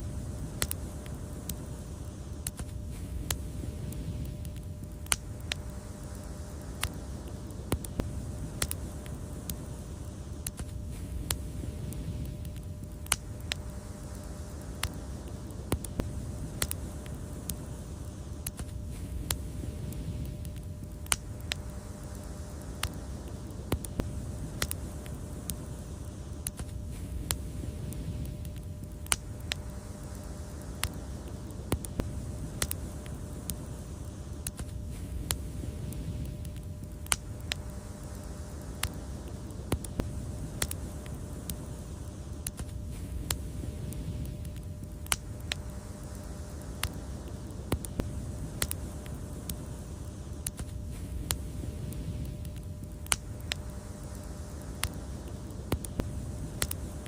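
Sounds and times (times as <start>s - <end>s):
wood fire crackling and popping: 0.0s - 57.0s.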